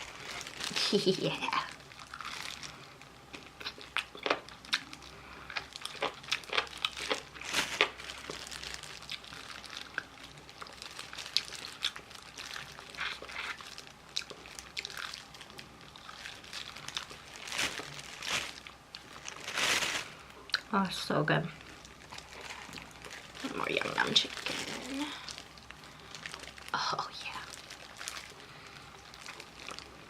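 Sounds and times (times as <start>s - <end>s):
crunching fried chicken: 0.0s - 20.6s, 21.6s - 30.0s.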